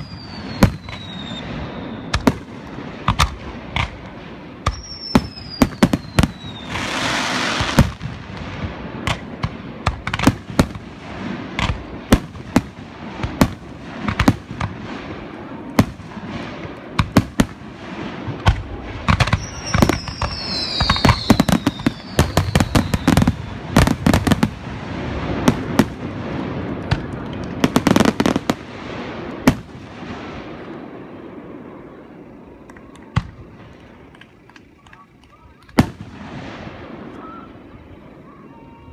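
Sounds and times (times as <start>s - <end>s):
falling firework whistles: 0.0s - 4.0s, 4.6s - 8.0s, 18.2s - 26.2s
fireworks bangs: 0.0s - 38.9s
fireworks crackling: 0.0s - 38.9s.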